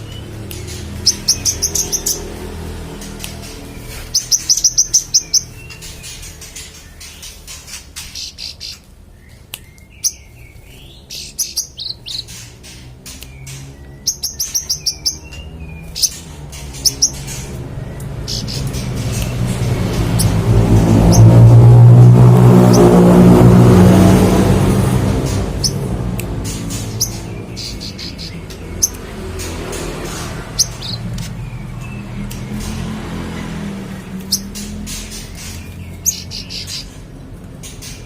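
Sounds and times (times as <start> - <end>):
songbird trilling and chirping: 0.0 - 21.7, 25.0 - 38.0
low hum: 17.1 - 29.0.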